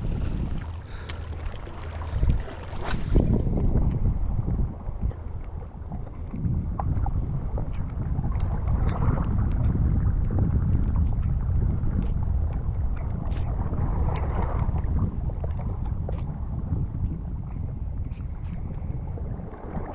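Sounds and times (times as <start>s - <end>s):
waves washing in: 0.0s - 5.0s
wind buffeting microphone: 0.0s - 19.9s.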